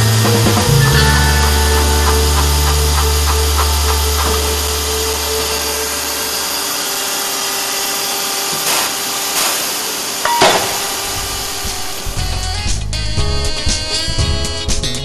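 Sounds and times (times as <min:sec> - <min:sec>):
circular saw whining: 0:00.0 - 0:14.7.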